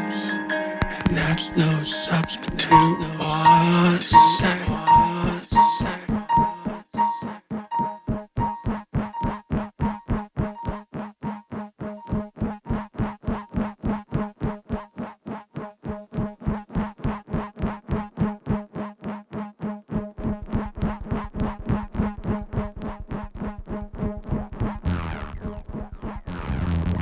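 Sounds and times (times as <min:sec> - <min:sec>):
rapidly pulsing synth note: 0:01.1 - 0:27.0
deep bass: 0:20.2 - 0:27.0.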